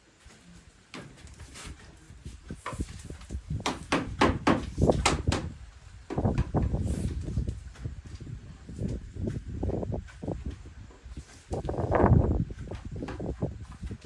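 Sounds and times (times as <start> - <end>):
hammering on wooden frame: 3.5 - 6.8.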